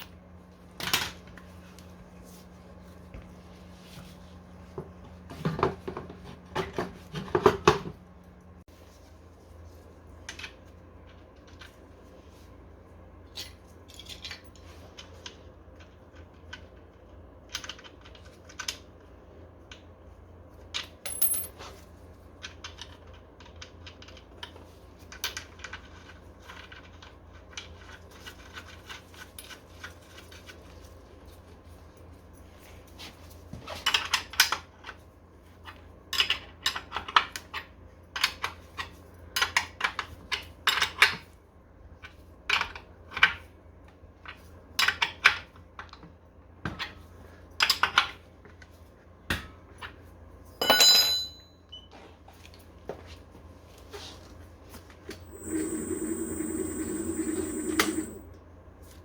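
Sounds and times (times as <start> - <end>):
metal parts and tools clinking: 21.1 - 21.6, 50.6 - 51.5.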